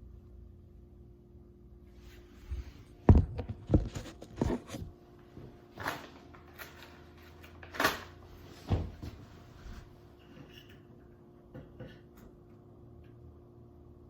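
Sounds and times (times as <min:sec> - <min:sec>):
cables being handled: 0:02.6 - 0:08.2.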